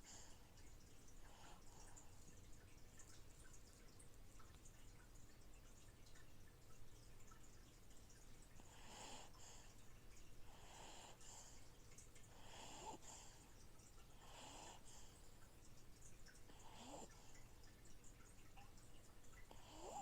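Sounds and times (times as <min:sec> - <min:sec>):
aquarium filter trickle and hum: 0:00.0 - 0:20.0
faint snoring: 0:12.3 - 0:13.4, 0:14.1 - 0:15.2, 0:16.5 - 0:17.4, 0:19.5 - 0:20.0.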